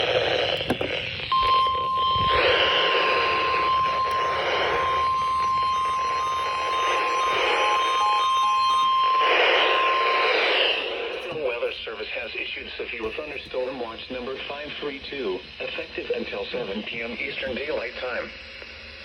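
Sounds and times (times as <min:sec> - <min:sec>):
steady high alarm tone: 0:00.0 - 0:12.1
radio static hiss: 0:00.0 - 0:19.0
static crackles: 0:00.0 - 0:19.0.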